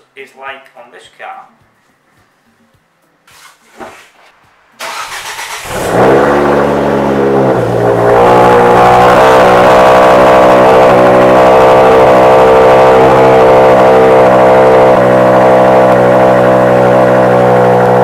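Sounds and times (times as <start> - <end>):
car engine starting and idling: 4.7 - 18.0.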